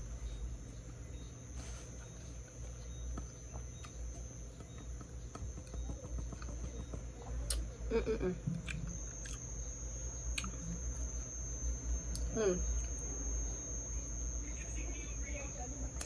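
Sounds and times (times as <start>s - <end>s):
low hum: 0.0s - 16.0s
steady high-pitched tone: 0.0s - 16.0s
chewing food: 8.5s - 9.5s.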